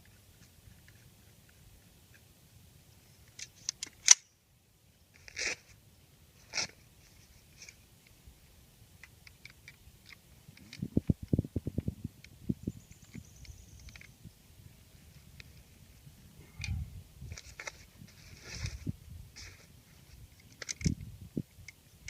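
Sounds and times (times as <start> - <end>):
metal rifle parts clicking: 20.4 - 21.0.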